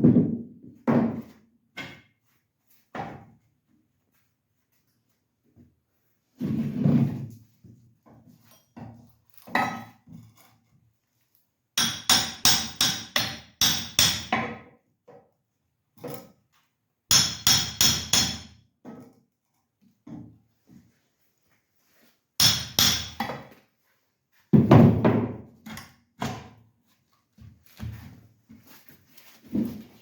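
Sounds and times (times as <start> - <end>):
scraping or rustling: 27.0 - 30.0.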